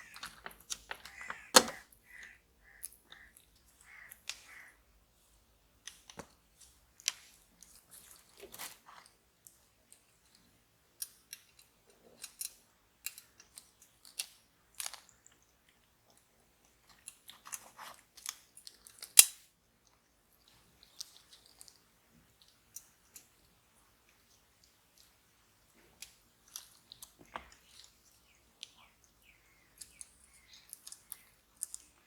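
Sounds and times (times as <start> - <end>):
model car parts clicking and tapping: 0.0 - 1.8, 11.0 - 15.1.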